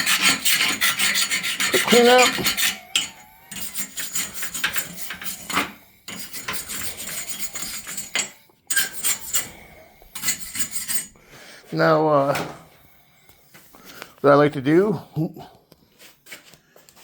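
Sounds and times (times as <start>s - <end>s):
wire brush scrubbing metal: 0.0s - 11.1s.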